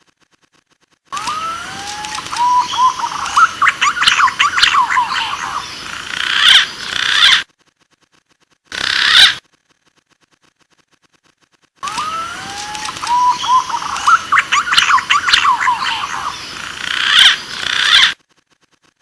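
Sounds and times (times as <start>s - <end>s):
pigeons calling: 1.2s - 7.4s, 11.8s - 18.2s.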